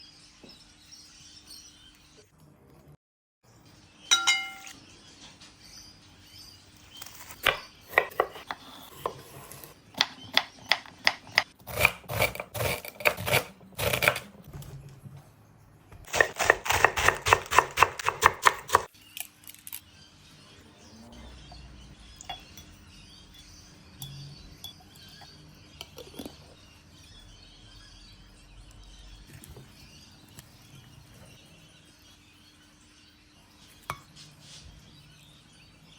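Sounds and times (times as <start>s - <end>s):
ringing clink: 4.1s - 4.7s
knife chopping on cutting board: 7.4s - 14.3s, 16.0s - 18.9s.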